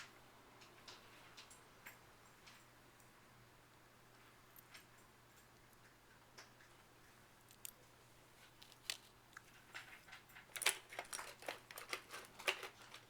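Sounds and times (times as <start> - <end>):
small objects clicking in hands: 7.4 - 7.8, 8.5 - 13.0
rustling: 7.4 - 13.0.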